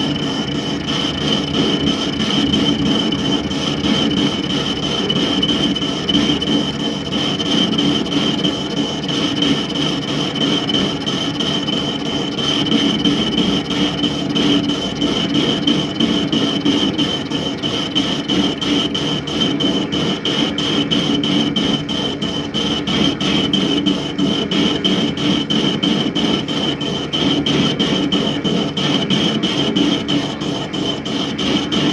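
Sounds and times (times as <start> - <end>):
lathe motor whining: 0.0 - 31.9.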